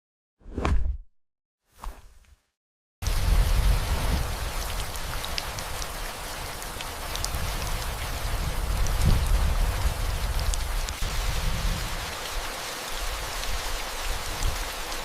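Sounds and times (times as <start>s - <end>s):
steady rain falling: 3.0s - 15.0s
raindrops ticking: 4.1s - 11.0s.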